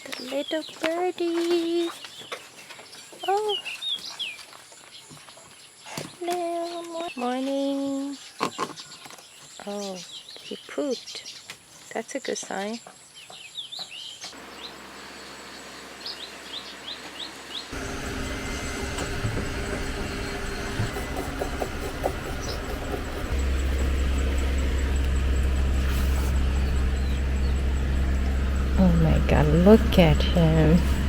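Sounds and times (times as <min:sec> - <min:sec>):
steady low rumble: 0:17.7 - 0:31.0
small bird chirping: 0:19.6 - 0:31.0.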